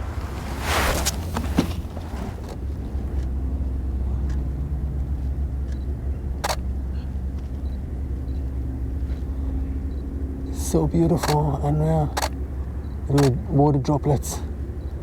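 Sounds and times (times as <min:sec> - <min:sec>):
low outdoor rumble: 0:00.0 - 0:15.0
camera shutter click: 0:06.4 - 0:06.6.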